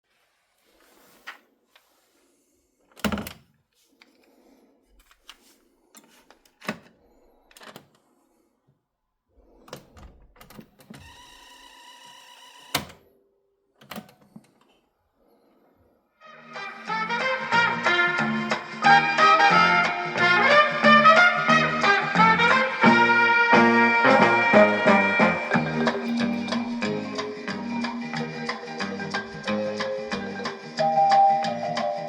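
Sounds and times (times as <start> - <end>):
music from radio: 16.2 - 32.0.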